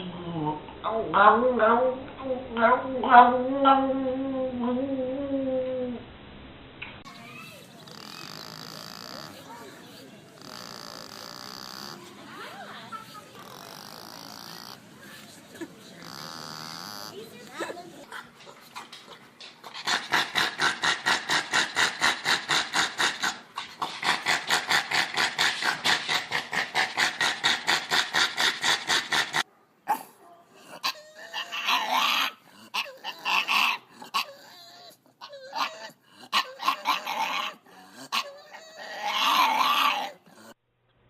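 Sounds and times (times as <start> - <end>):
dog whining: 7.1 - 17.8, 30.6 - 40.6.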